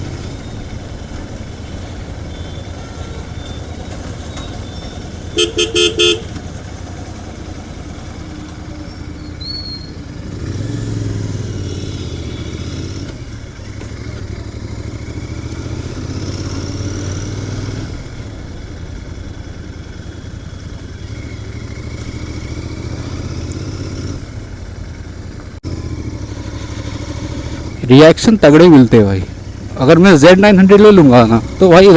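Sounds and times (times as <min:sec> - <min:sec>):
motorcycle engine rumbling: 0:00.0 - 0:31.9
horn beeping: 0:02.2 - 0:06.5.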